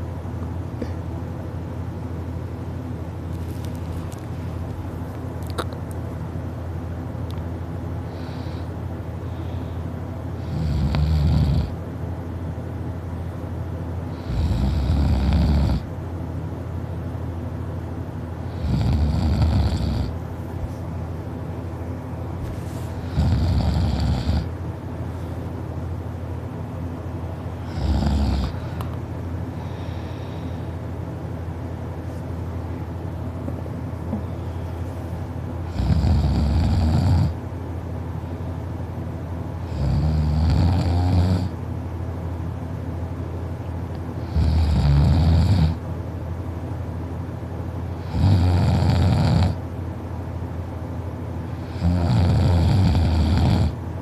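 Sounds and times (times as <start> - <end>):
person snoring loudly: 10.4 - 11.8, 14.2 - 15.9, 18.5 - 20.2, 23.0 - 24.5, 27.6 - 28.7, 35.7 - 37.4, 39.6 - 41.5, 44.2 - 45.8, 48.0 - 49.6, 51.6 - 53.8.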